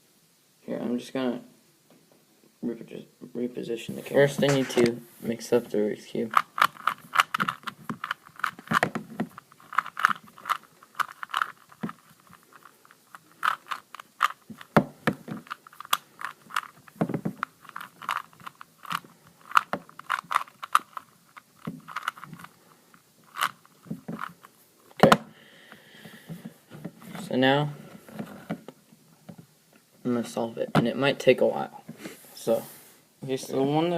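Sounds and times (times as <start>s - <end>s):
puzzle cube plastic clicks: 6.3s - 25.2s.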